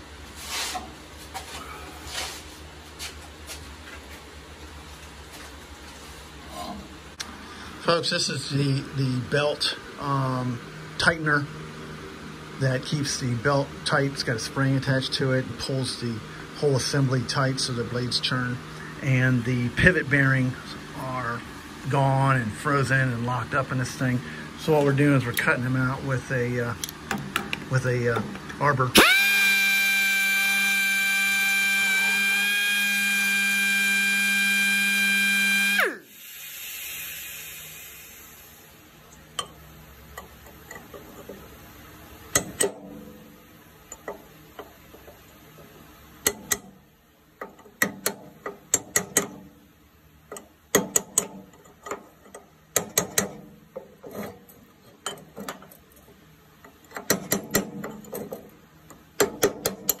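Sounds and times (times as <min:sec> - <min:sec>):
sharp clicks and knocks: 0:26.8 - 0:28.6, 0:42.3 - 0:43.1, 0:43.9 - 0:46.8, 0:47.4 - 0:49.5, 0:50.3 - 0:55.8, 0:56.6 - 1:00.0
electric drill running: 0:28.9 - 0:38.0.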